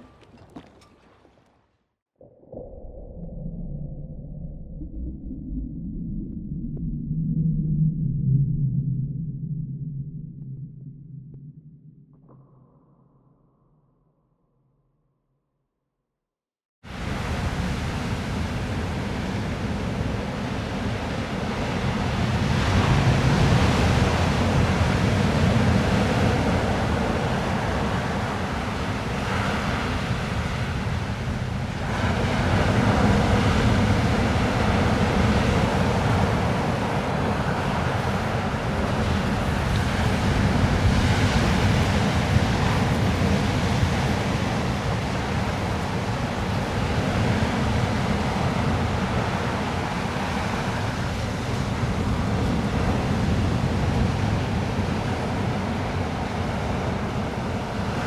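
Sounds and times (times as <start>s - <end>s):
ocean surf washing onto beach: 16.9s - 58.0s.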